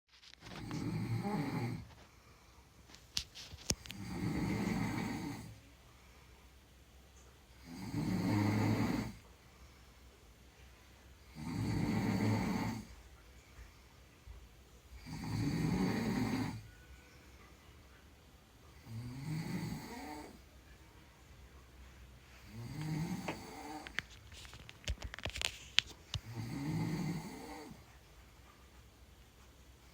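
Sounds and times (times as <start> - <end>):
person snoring: 0.6 - 1.9, 3.8 - 5.6, 7.6 - 9.2, 11.3 - 12.9, 15.0 - 16.7, 18.8 - 20.4, 22.4 - 24.0, 26.2 - 27.8.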